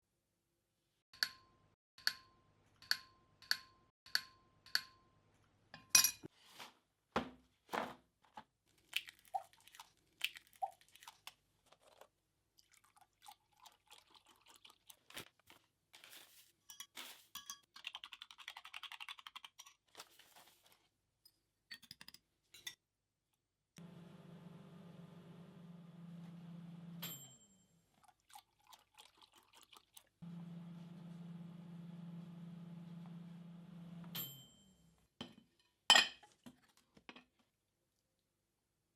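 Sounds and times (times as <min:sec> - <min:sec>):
utensils clinking on dishes: 0:16.7 - 0:17.7.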